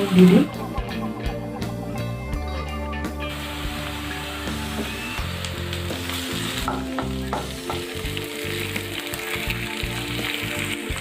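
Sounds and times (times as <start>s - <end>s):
onions sizzling in hot oil: 0.0s - 0.9s, 3.1s - 11.0s
background music: 0.0s - 11.0s.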